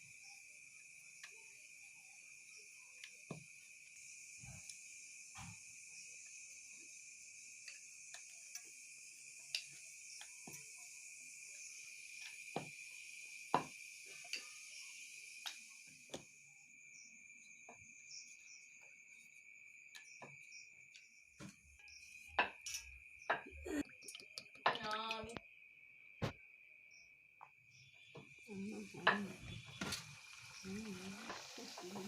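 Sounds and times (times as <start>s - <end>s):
high hiss: 0.0s - 17.1s, 28.4s - 32.0s
crickets chirring: 0.0s - 32.0s.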